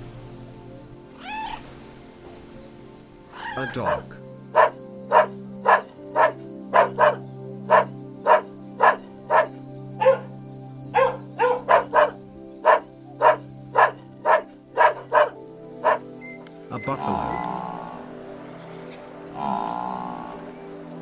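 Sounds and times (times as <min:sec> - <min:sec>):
background music drone: 0:00.0 - 0:21.0
dog barking: 0:03.4 - 0:10.3, 0:10.9 - 0:16.1.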